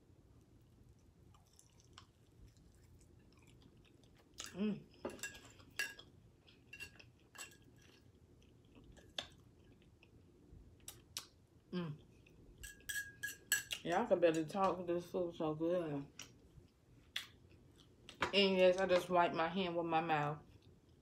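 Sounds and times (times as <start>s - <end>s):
chewing with wet mouth clicks: 0.9s - 4.6s, 5.3s - 11.4s, 16.1s - 18.2s.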